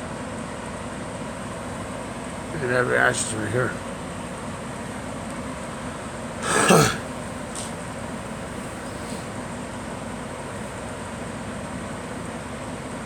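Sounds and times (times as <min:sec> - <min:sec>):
girl coughing: 0:06.4 - 0:07.0.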